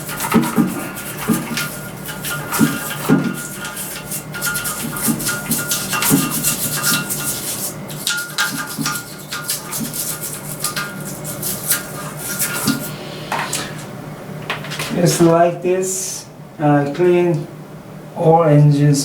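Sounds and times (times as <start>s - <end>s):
scrubbing strokes on metal: 0.0s - 13.8s.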